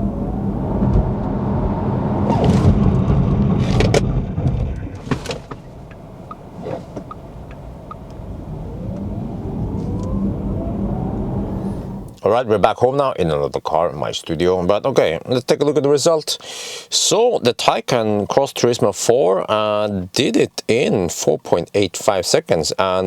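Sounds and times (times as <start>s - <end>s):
tyre and road noise: 0.0s - 12.2s
electric motor whine: 7.0s - 12.1s.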